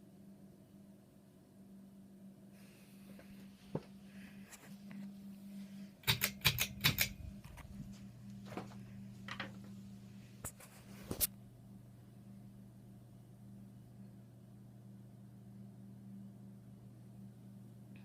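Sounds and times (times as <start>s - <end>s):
ceiling fan motor hum: 0.0s - 18.0s
sharp clicks: 6.0s - 7.2s.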